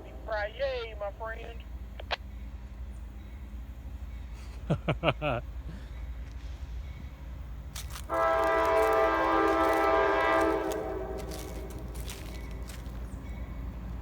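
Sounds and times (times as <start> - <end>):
low steady rumble: 0.0 - 3.0
locomotive air horn: 7.9 - 12.8.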